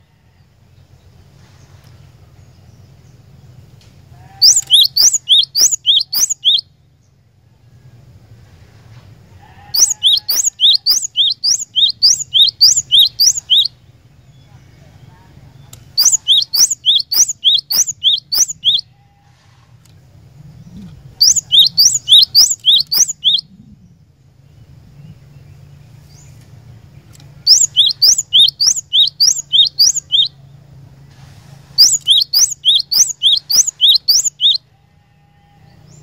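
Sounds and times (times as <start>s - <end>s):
faint low hum: 0.0s - 36.0s
bird singing high whistled notes: 4.4s - 6.7s, 9.8s - 13.8s, 16.0s - 18.9s, 21.2s - 23.5s, 27.5s - 30.4s, 31.8s - 34.6s.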